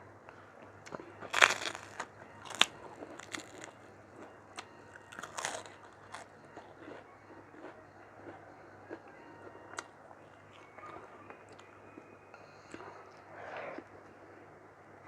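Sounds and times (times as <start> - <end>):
person chewing food: 0.8 - 11.8.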